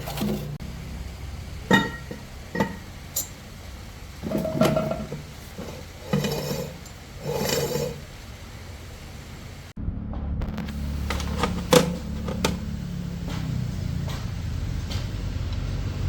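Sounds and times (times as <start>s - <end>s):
metal tools clattering and scraping: 0.0s - 0.6s, 1.7s - 3.4s, 4.2s - 8.1s
ringing metallic clinks: 1.7s - 3.4s.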